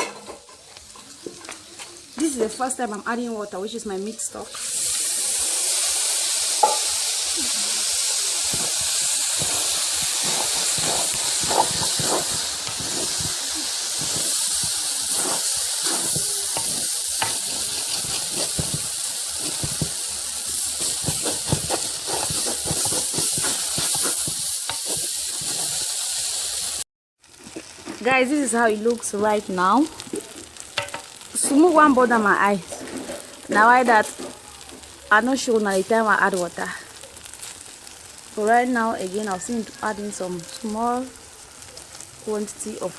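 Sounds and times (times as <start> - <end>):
tomato base sizzling in a pot: 0.0 - 42.9
small crackles and pops: 8.4 - 25.9, 27.2 - 42.9.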